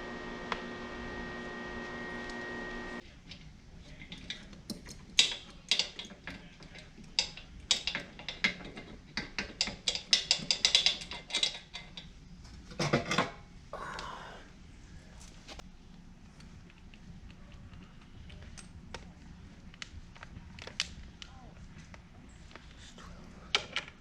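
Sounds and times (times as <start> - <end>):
metal tools clinking: 4.0 - 12.1.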